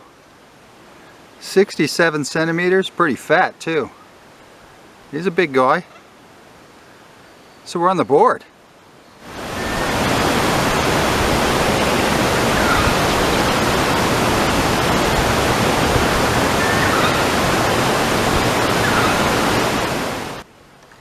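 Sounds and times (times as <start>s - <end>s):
steady loud hiss: 9.2s - 20.5s.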